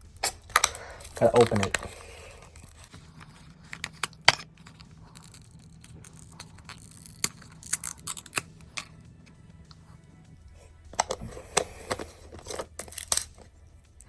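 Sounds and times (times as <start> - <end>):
plastic packaging crackling: 0.0 - 9.0, 10.9 - 13.6.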